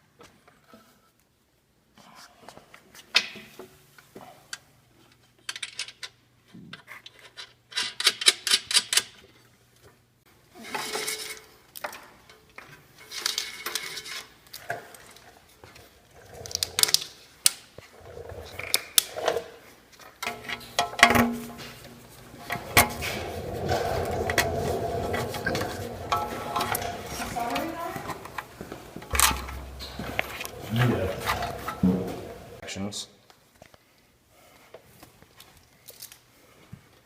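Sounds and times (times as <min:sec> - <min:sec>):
faint low hum: 0:21.4 - 0:32.8.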